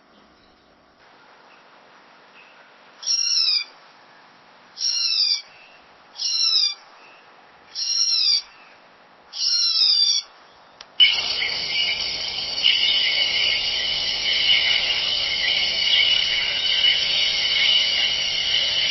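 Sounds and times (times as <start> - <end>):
owl calling: 3.0 - 3.7, 4.8 - 5.5, 6.2 - 6.8, 7.7 - 8.6, 9.3 - 10.3, 11.0 - 18.9.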